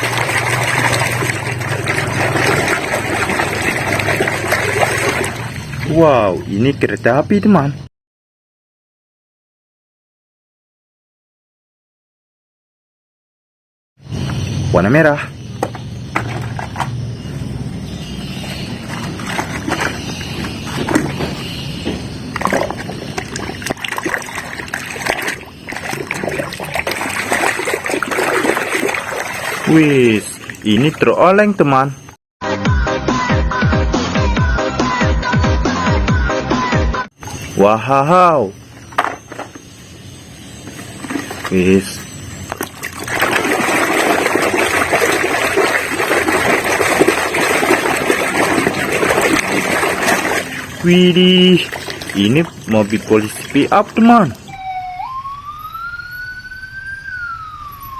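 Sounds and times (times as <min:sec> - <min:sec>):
water splashing and sloshing: 0:00.0 - 0:06.5, 0:15.6 - 0:31.6, 0:40.5 - 0:54.5
plastic toy knocks: 0:38.9 - 0:39.5.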